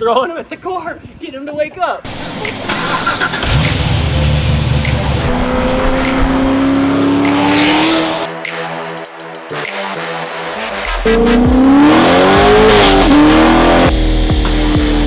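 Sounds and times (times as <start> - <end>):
car engine rumbling: 2.1 - 8.3, 10.8 - 15.0
music: 2.1 - 15.0.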